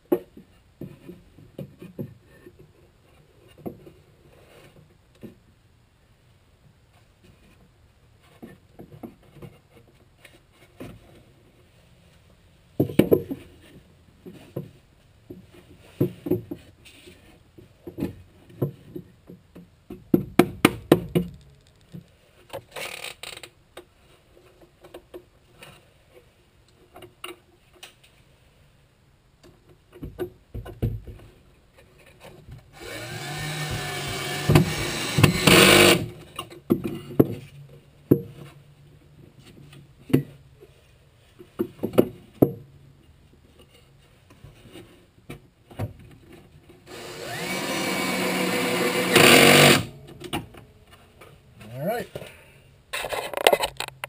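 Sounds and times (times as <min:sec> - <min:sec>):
power tool motor running: 0:32.8 - 0:36.1, 0:46.9 - 0:49.9.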